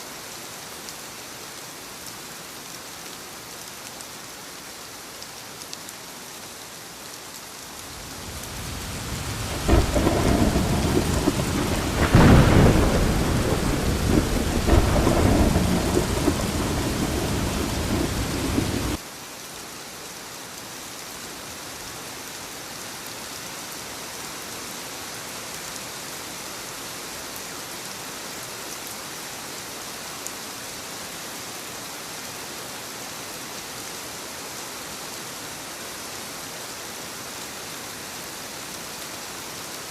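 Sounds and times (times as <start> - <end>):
steady rain falling: 0.0 - 39.9
thunder rumbling: 7.8 - 19.0.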